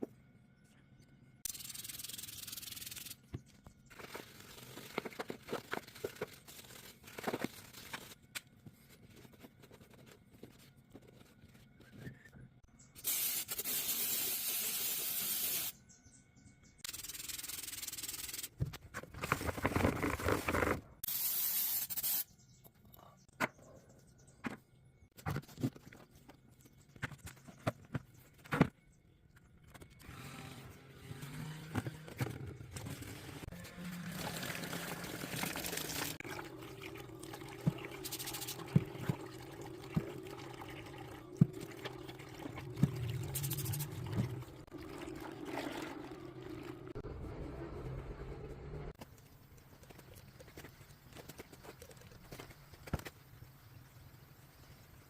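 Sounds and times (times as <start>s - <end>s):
spray hissing: 13.0s - 15.8s, 21.0s - 22.2s.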